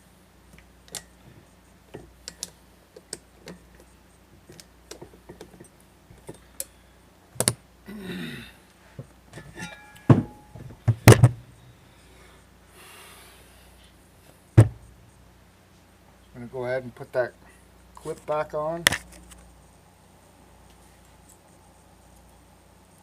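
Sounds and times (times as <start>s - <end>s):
light metal clicks and taps: 1.9s - 6.7s
sharp metal clanks: 9.4s - 11.2s.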